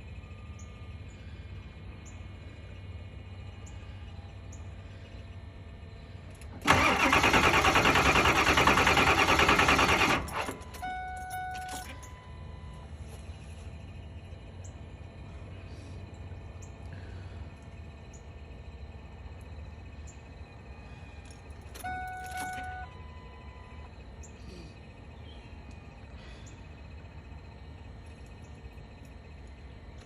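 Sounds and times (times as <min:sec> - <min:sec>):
steady low hum: 0:00.0 - 0:30.0
short beep: 0:10.6 - 0:12.9, 0:21.8 - 0:23.9.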